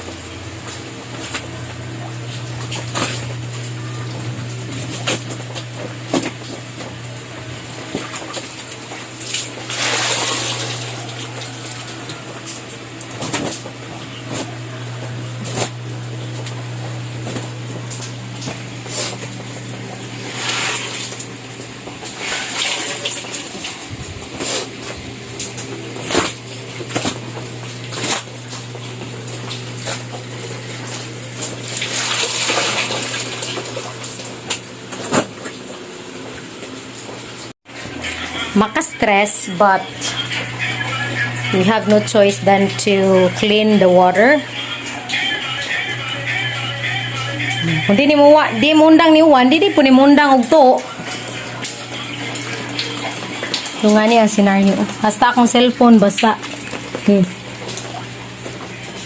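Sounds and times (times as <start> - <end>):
water splashing and trickling: 7.7 - 12.1, 20.0 - 24.4, 27.8 - 34.6, 50.2 - 59.0.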